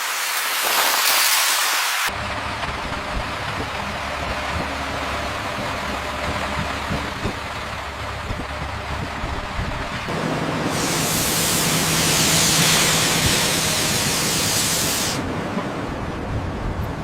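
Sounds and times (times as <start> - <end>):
loud steady hiss: 0.0 - 2.1, 10.1 - 15.3
rumbling machinery: 2.1 - 17.0.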